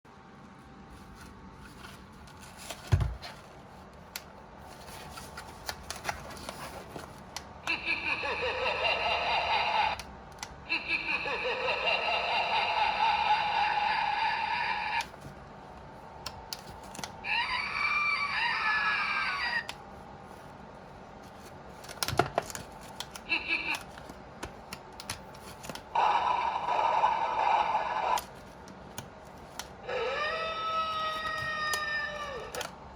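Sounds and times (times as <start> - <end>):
scream: 17.3 - 19.7, 26.0 - 28.2, 29.9 - 32.6.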